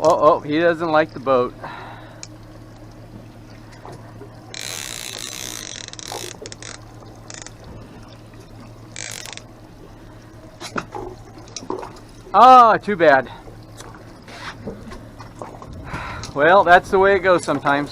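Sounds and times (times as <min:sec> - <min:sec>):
steady low hum: 0:00.0 - 0:17.9
fishing reel drag buzzing: 0:04.4 - 0:08.1, 0:08.8 - 0:09.6.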